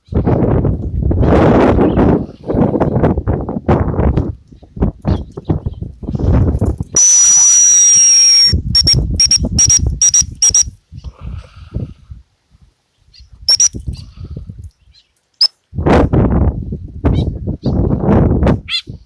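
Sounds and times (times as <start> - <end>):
wind buffeting microphone: 0.0 - 15.0, 15.7 - 19.0
shrill whistle blasts: 7.0 - 10.7, 13.5 - 13.8.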